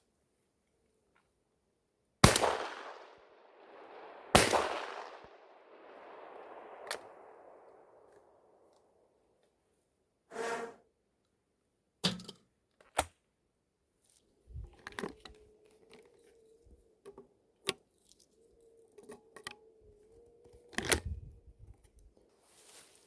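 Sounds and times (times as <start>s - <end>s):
shotgun being handled clicks: 20.7s - 21.0s.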